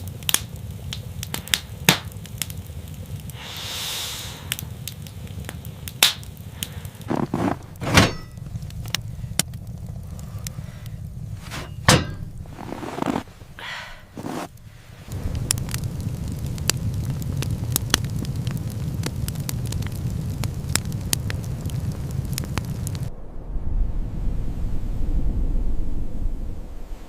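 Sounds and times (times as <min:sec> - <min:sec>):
fire crackling and popping: 0:00.0 - 0:23.1
low steady rumble: 0:00.0 - 0:27.0
brief hiss: 0:03.4 - 0:04.5
heavy knocks: 0:11.5 - 0:12.9.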